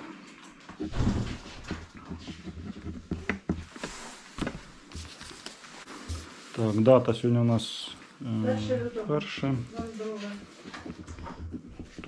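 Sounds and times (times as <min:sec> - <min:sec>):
pen and paper clicks and knocks: 0:00.8 - 0:05.6, 0:09.8 - 0:12.0.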